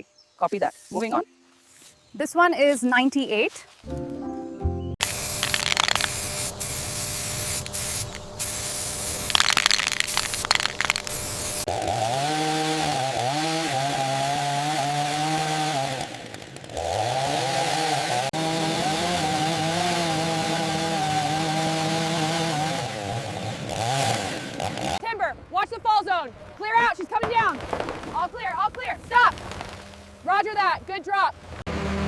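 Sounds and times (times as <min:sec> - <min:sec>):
chainsaw cutting: 0:05.0 - 0:25.0, 0:31.4 - 0:32.0.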